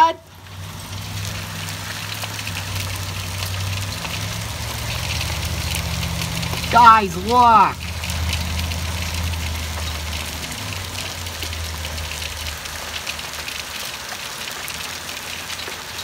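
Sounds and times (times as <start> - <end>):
hail pelting down: 0.0 - 16.0.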